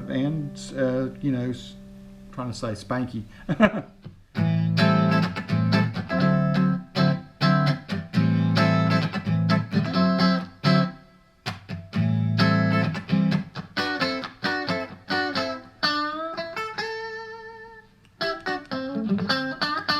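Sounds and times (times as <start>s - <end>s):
electric guitar chords ringing: 0.0s - 19.9s.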